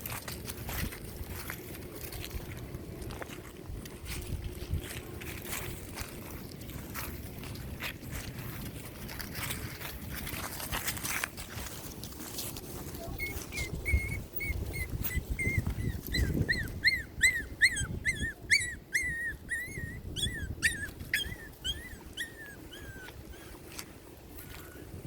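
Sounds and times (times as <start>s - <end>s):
puppy whimpering: 12.9s - 23.8s.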